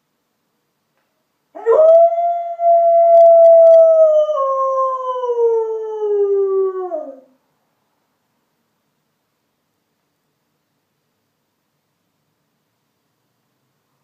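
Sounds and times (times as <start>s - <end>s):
dog howling: 1.6s - 7.3s.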